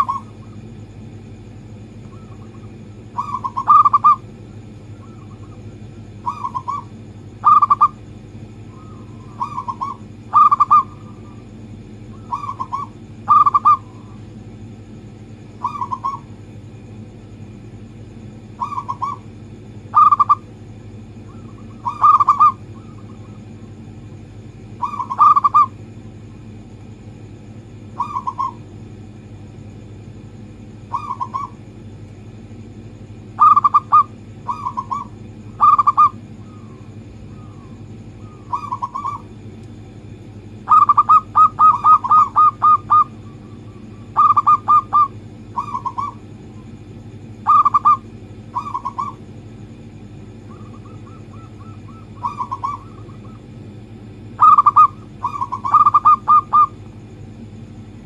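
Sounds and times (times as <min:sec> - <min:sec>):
dove cooing: 0:00.0 - 0:00.8, 0:02.0 - 0:14.2, 0:15.5 - 0:16.4, 0:18.4 - 0:20.5, 0:21.2 - 0:23.6, 0:24.6 - 0:25.8, 0:27.8 - 0:28.7, 0:30.8 - 0:31.7, 0:33.2 - 0:39.4, 0:40.6 - 0:46.7, 0:47.4 - 0:49.3, 0:50.3 - 0:53.5, 0:54.2 - 0:56.8
steady low hum: 0:00.0 - 0:58.0.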